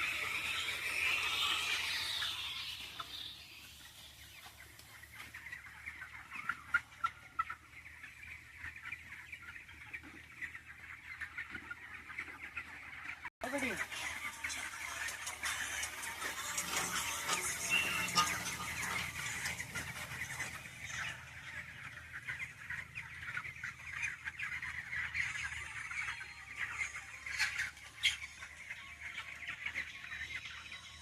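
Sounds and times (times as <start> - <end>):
chickens calling: 0.0 - 31.0
constant low hum: 13.8 - 30.7.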